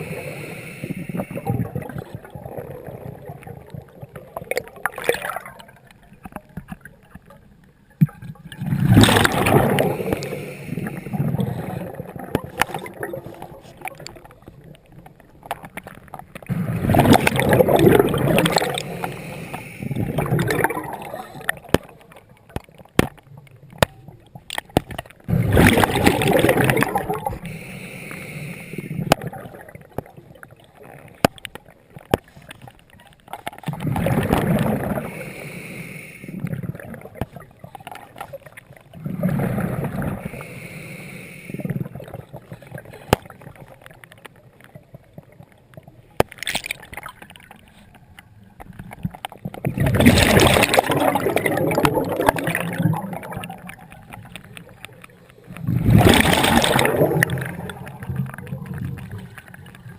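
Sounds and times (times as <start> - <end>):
diver breathing through regulator: 0.0 - 1.5, 9.6 - 12.1, 16.5 - 20.7, 27.4 - 29.1, 34.2 - 36.5, 39.2 - 41.9
soft hiss: 0.0 - 4.2, 9.3 - 20.5, 26.6 - 29.3, 34.2 - 46.2
bubbles rushing and gurgling: 0.0 - 40.6, 41.4 - 48.1, 48.7 - 59.9.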